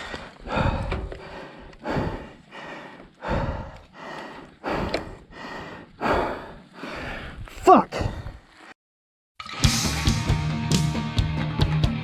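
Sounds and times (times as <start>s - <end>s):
person gasping breaths: 0.0s - 8.5s.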